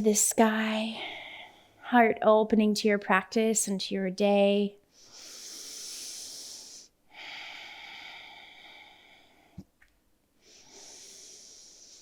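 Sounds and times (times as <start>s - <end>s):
woman breathing deeply: 4.9s - 9.7s, 10.4s - 12.0s.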